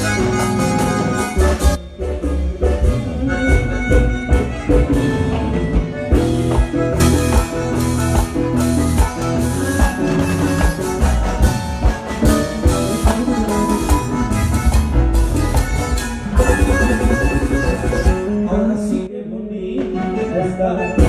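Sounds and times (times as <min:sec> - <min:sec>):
heavy bass: 0:00.0 - 0:19.0
band playing live: 0:00.0 - 0:21.0
drum beat: 0:02.8 - 0:18.3.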